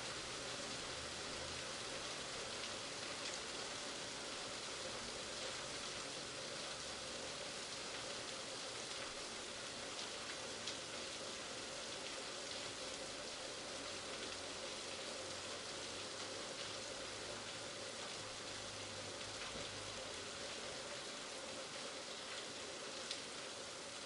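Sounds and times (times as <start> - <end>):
heavy rain falling: 0.0 - 24.0
sharp raindrop ticks: 2.6 - 3.4, 9.9 - 11.1, 22.2 - 23.4.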